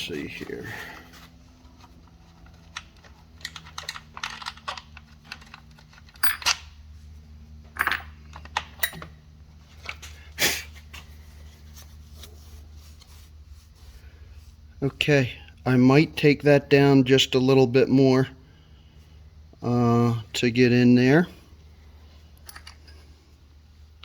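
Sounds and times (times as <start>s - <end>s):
low steady hum: 0.0s - 24.0s
small hard parts clicking: 2.7s - 6.6s.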